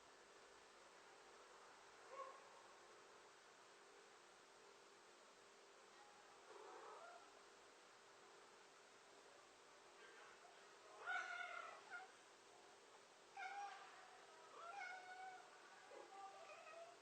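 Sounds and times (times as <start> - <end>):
cat meowing faintly: 6.5 - 7.4, 10.9 - 12.2, 13.3 - 17.0.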